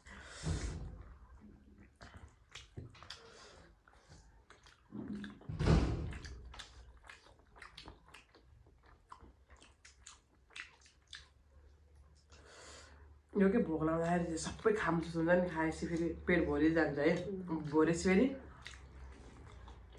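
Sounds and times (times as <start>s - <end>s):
wet chewing smacks: 1.0s - 12.4s, 17.1s - 19.9s.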